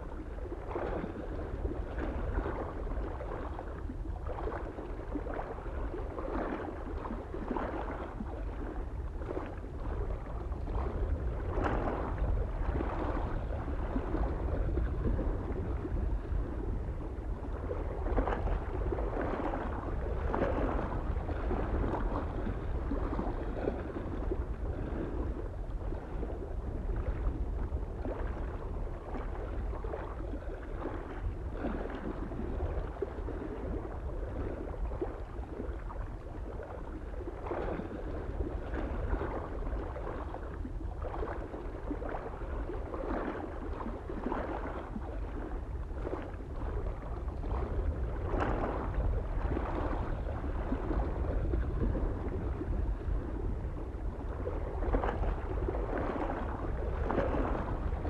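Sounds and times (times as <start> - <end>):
waves lapping against shore: 0.0 - 58.0
wind rumble on microphone: 0.0 - 58.0.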